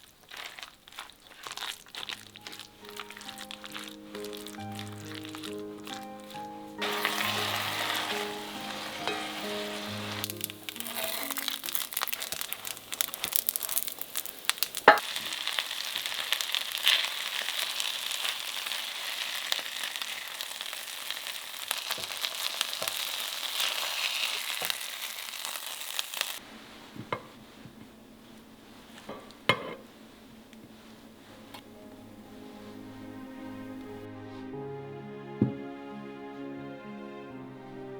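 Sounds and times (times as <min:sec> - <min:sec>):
food sizzling in a pan: 0:00.0 - 0:27.7.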